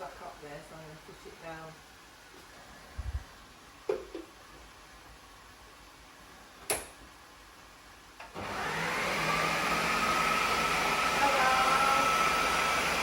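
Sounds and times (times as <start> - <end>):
food processor motor whining: 8.3 - 13.0.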